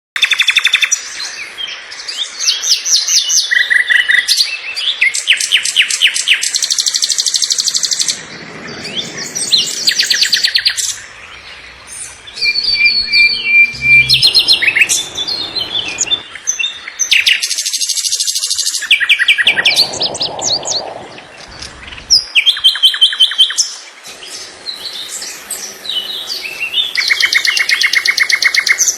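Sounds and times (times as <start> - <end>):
songbirds trilling and chirping: 0.3 - 28.9.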